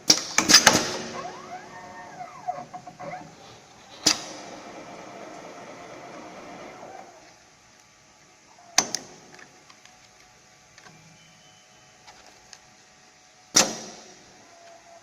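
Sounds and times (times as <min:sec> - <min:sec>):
faint machine hum: 0:00.0 - 0:15.0
loud mechanical clacks: 0:00.4 - 0:07.3.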